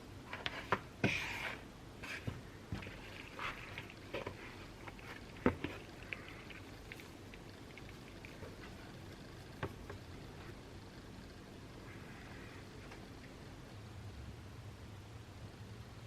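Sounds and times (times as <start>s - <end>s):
biting and chewing bagels: 2.8s - 11.3s.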